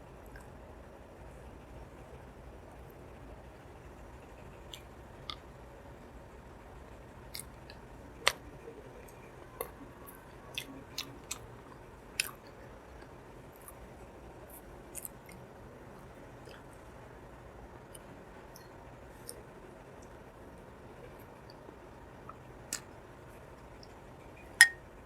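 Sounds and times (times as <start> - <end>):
wet mouth clicks and smacks eating: 0.2 - 0.5, 7.3 - 8.4, 9.6 - 11.4, 14.5 - 15.4, 22.3 - 23.0.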